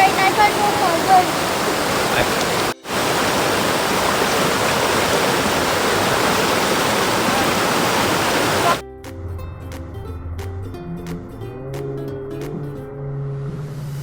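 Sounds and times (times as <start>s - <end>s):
stream water rushing: 0.0s - 8.8s
background music: 8.7s - 14.0s.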